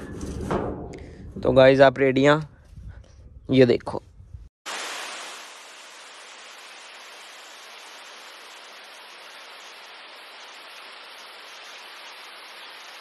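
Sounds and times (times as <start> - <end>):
water rushing: 4.7 - 13.0.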